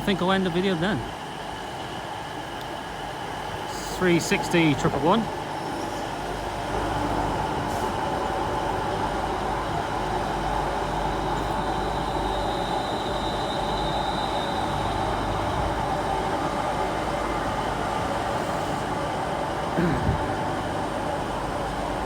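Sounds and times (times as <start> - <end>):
electric train humming: 0.0 - 22.0
faint high whine: 9.3 - 17.6.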